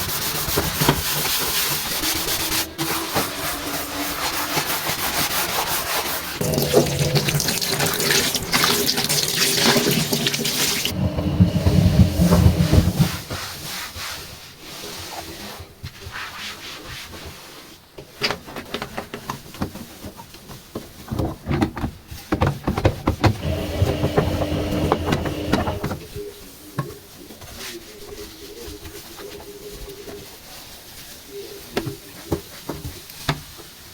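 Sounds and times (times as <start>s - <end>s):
sponge scrubbing washing machine: 0.0s - 17.7s, 22.2s - 26.2s
tap running: 6.4s - 7.7s, 9.8s - 13.2s, 23.2s - 26.0s.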